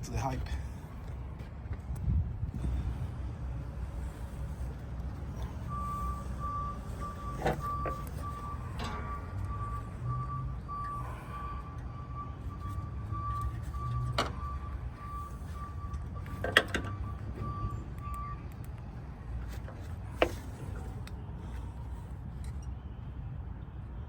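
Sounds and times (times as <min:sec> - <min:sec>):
low engine rumble: 0:00.0 - 0:24.0
reversing alarm beeping: 0:04.1 - 0:18.4.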